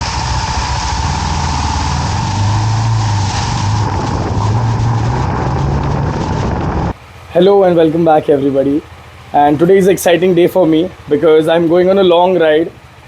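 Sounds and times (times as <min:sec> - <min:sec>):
wind and road noise: 0:00.0 - 0:12.1
motorcycle engine running: 0:00.0 - 0:13.0.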